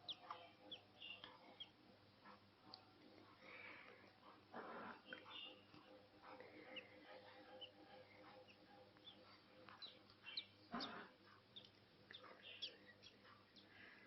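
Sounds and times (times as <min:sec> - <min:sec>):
budgerigars chirping: 0:00.0 - 0:01.8, 0:06.6 - 0:13.8.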